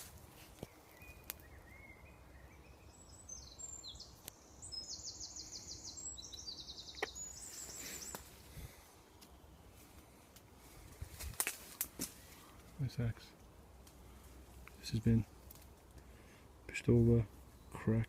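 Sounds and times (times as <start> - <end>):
songbird singing fast trills: 0.7 - 8.5.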